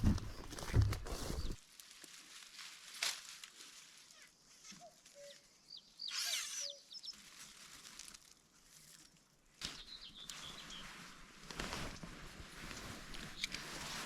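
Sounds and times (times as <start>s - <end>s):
brief rustle: 0.0s - 5.4s, 7.2s - 14.0s
small birds chirping: 4.9s - 7.2s, 9.7s - 11.0s.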